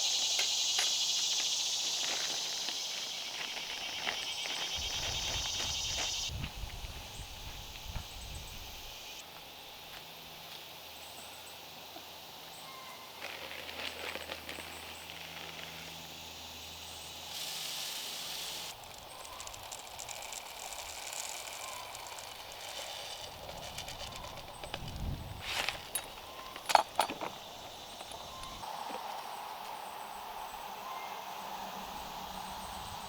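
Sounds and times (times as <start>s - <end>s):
steady high hiss: 0.0s - 12.7s, 15.7s - 33.0s
small ticks and rustles: 0.1s - 8.2s, 13.2s - 16.1s, 17.3s - 28.6s.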